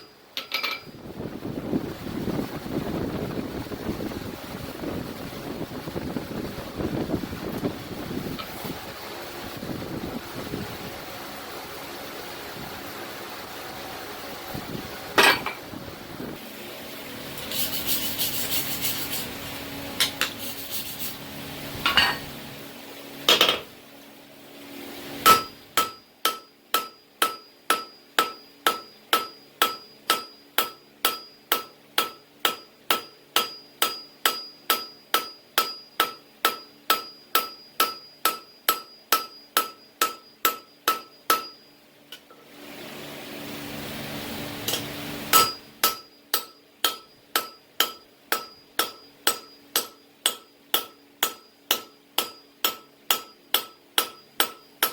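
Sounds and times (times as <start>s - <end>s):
hammer blows on anvil: 25.2s - 41.6s, 44.7s - 54.9s.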